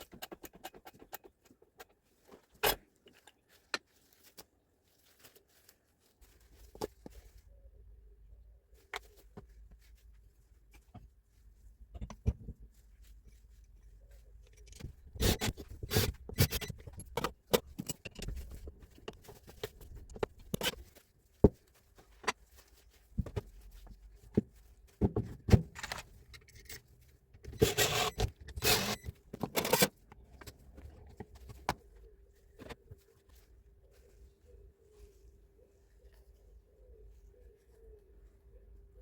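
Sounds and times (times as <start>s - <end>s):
metal parts clinking and scraping: 14.4s - 20.8s, 25.7s - 30.5s
rattling scrape: 27.5s - 29.9s.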